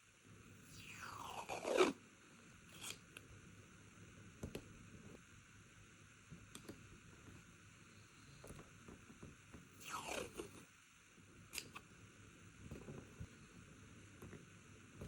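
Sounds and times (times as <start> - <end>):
tape peeling: 1.4 - 2.0.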